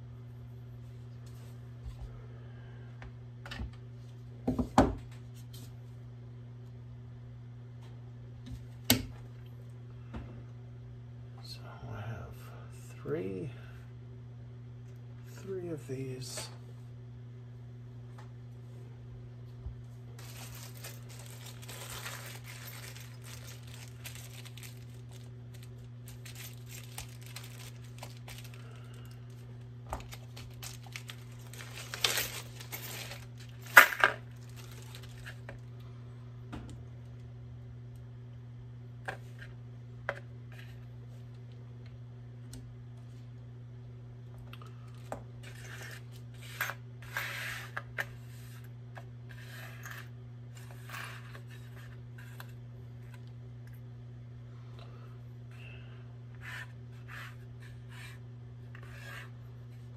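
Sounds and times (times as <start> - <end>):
steady low hum: 0.0 - 59.9
rustling: 20.2 - 29.4, 30.0 - 35.4.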